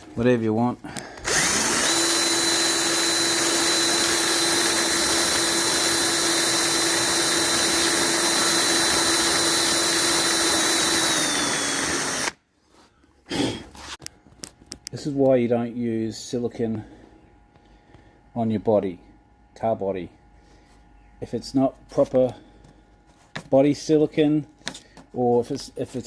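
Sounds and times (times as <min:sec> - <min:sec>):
electric drill running: 0:01.0 - 0:12.4.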